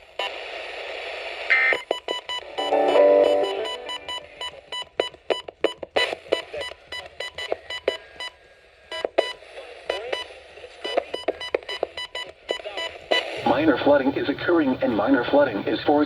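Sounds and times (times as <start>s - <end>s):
radio static crackling clicks: 0.0s - 2.3s.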